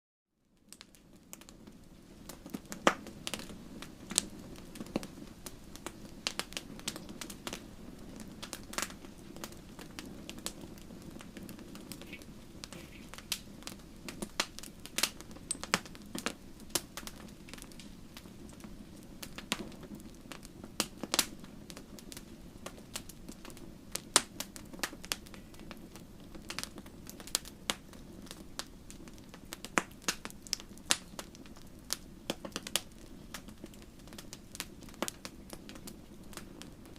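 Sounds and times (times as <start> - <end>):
bonfire crackles and pops: 0.4 - 36.9
low rush of flame: 0.5 - 36.9.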